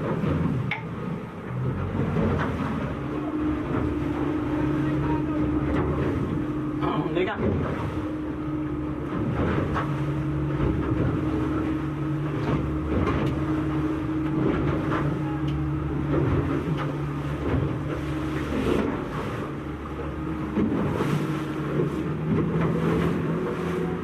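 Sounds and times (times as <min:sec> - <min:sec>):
boat motor running: 0:00.0 - 0:24.0
hull knocking on waves: 0:00.0 - 0:24.0
rush of wind and water: 0:00.0 - 0:24.0.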